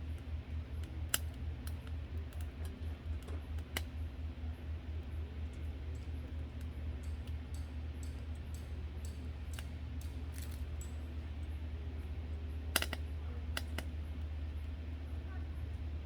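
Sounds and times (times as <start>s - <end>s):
steady low hum: 0.0s - 16.0s
light clicks and taps: 0.1s - 4.0s, 5.0s - 12.1s, 12.7s - 14.3s.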